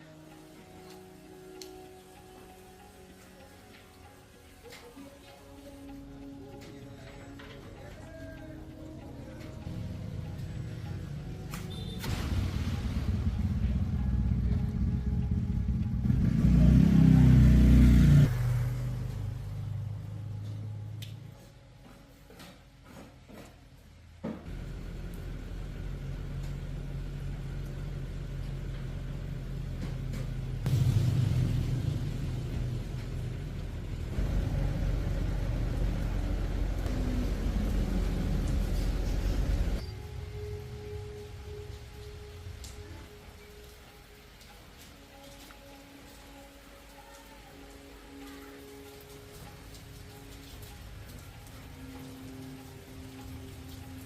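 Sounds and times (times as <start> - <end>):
low mechanical rumble: 12.1 - 21.1, 24.5 - 42.6.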